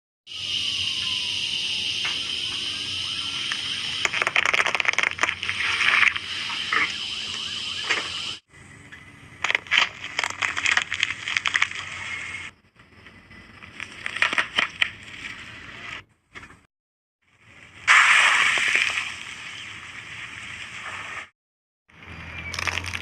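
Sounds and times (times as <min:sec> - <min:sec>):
car tyre crushing crunchy objects: 0:04.0 - 0:06.8, 0:09.4 - 0:12.4, 0:13.7 - 0:15.5, 0:22.4 - 0:23.0.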